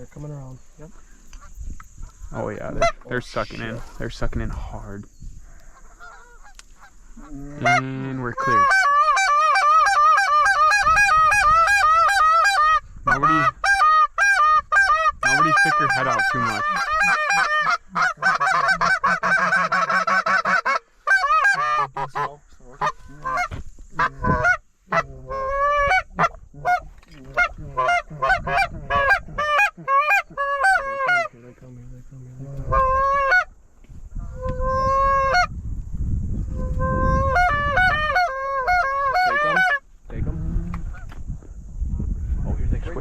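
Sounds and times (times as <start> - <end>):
goose honking and clucking: 5.6 - 31.5, 32.6 - 33.5, 34.2 - 35.5, 36.6 - 39.9.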